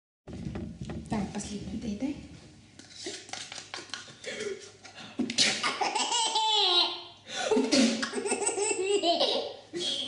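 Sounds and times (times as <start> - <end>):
person sneezing: 5.3 - 5.8, 7.7 - 8.0
baby laughing: 5.5 - 7.1, 7.7 - 9.6.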